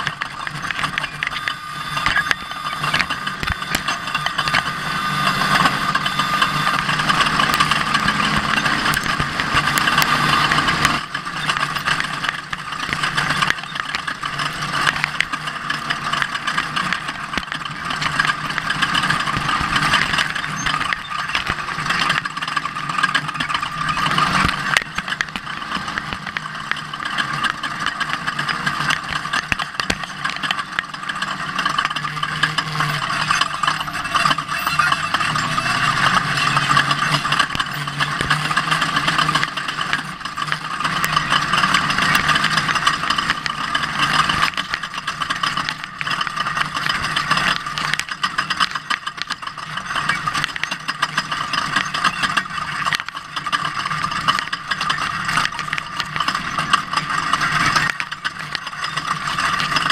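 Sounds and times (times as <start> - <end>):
steady rush of noise: 0.0 - 59.9
truck engine running: 0.0 - 59.9.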